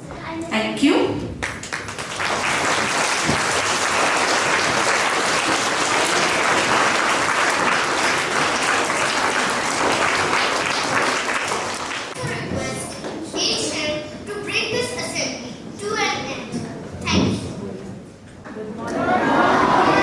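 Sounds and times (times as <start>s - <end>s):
audience applauding: 1.4s - 12.3s, 18.9s - 20.0s.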